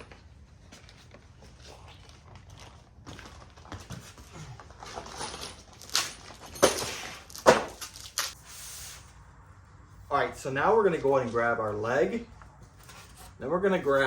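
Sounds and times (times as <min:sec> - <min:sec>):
frame pieces thumping down: 0:04.9 - 0:08.3.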